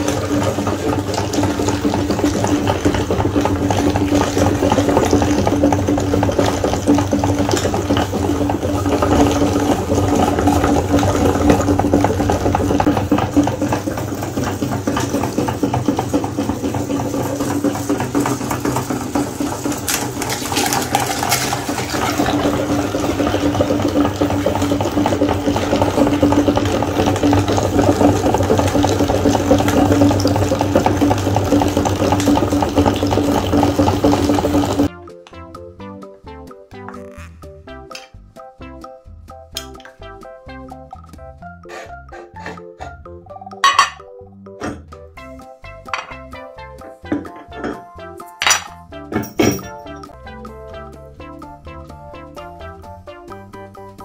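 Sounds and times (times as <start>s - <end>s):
meat grinder motor hum: 0.0s - 34.9s
wet grinding noise: 0.0s - 34.9s.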